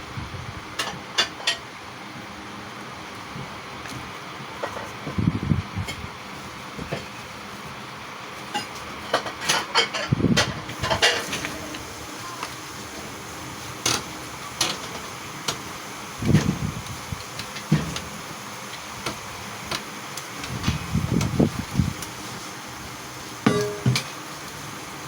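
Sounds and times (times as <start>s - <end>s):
steady background noise: 0.0s - 25.0s
utensils and dishes clinking: 8.5s - 11.8s, 23.4s - 24.3s.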